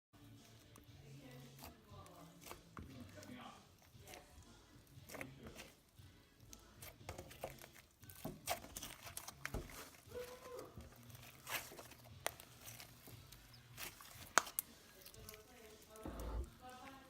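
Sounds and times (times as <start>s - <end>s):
slime clicking and tearing: 11.1s - 16.0s.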